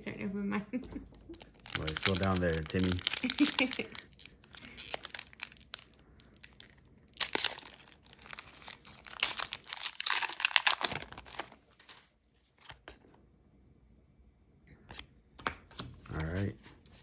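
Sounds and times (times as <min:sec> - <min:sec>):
foil wrapper crinkling and tearing: 0:01.2 - 0:12.1.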